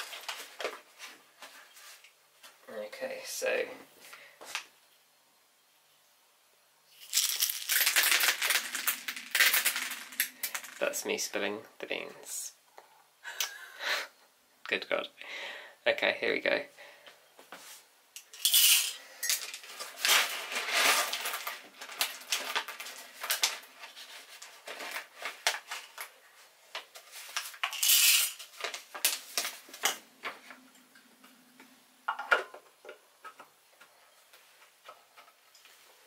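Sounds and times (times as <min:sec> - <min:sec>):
coffee beans poured rattling: 0:06.9 - 0:11.0, 0:18.3 - 0:23.6, 0:27.2 - 0:28.6.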